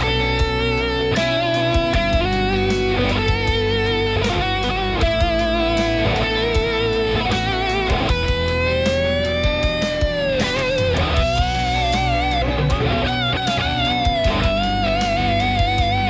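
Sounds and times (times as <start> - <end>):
electric guitar lead with vibrato: 0.0 - 16.0
steady percussive beat: 0.0 - 16.0.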